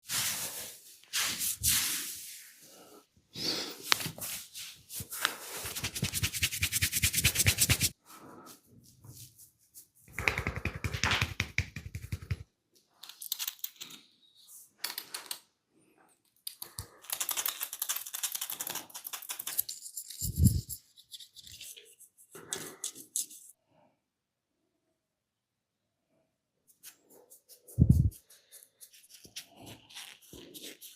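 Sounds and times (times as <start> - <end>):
hands tapping and rubbing head: 5.0 - 7.9, 9.2 - 12.5, 16.8 - 20.8, 26.7 - 30.9.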